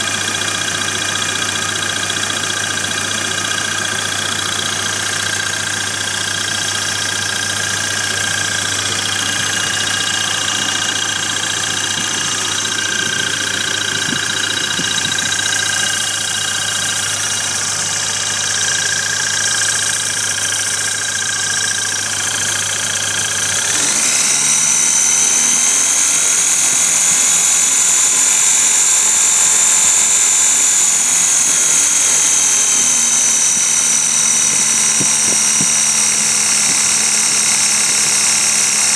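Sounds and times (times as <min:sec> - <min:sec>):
car engine running: 0:00.0 - 0:38.9
steady high whine: 0:07.2 - 0:21.1, 0:23.3 - 0:38.9.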